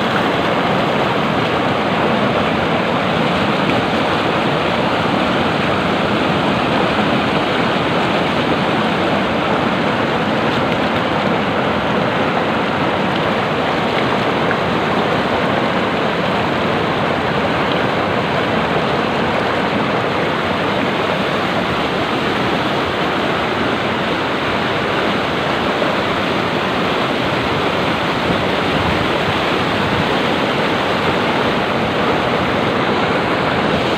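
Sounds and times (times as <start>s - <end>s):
stream water rushing: 0.0s - 33.9s.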